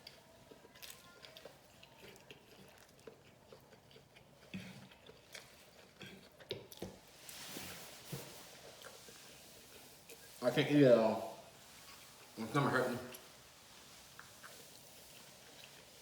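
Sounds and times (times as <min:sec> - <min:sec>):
person chewing: 0:00.0 - 0:07.1, 0:08.1 - 0:10.4, 0:13.1 - 0:16.0.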